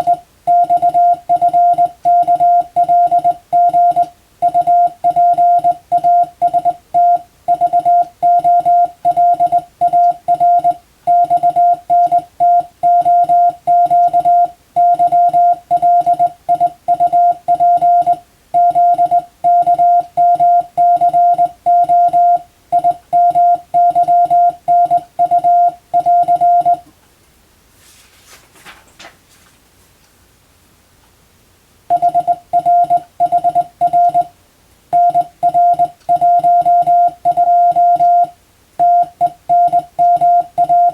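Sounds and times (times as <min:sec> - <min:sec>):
morse code beeps: 0:00.0 - 0:26.8, 0:31.9 - 0:34.3, 0:34.9 - 0:40.9.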